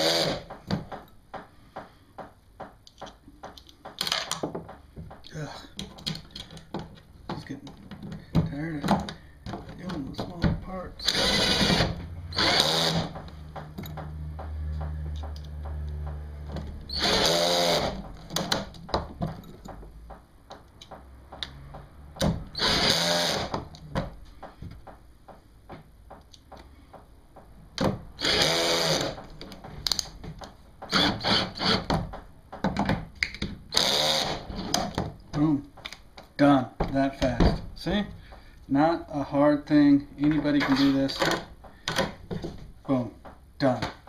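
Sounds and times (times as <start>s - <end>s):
power drill bursts: 0.0s - 0.5s, 11.0s - 13.2s, 16.9s - 18.0s, 22.6s - 23.5s, 28.2s - 29.2s, 30.9s - 31.9s, 33.7s - 34.5s.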